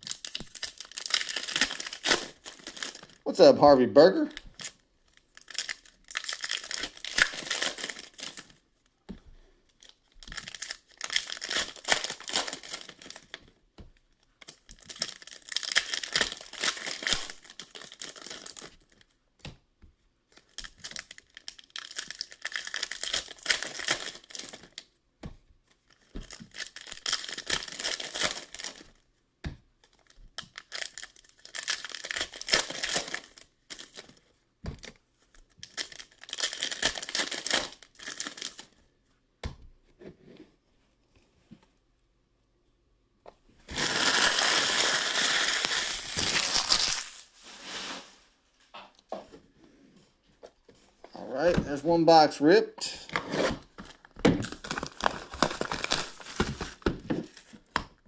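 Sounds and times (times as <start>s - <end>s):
foil wrappers tearing: 0.0s - 3.2s, 5.4s - 8.5s, 10.3s - 13.3s, 14.5s - 18.7s, 20.4s - 24.7s, 26.3s - 28.9s, 30.4s - 34.1s, 35.6s - 38.6s, 43.7s - 48.0s, 53.4s - 57.5s.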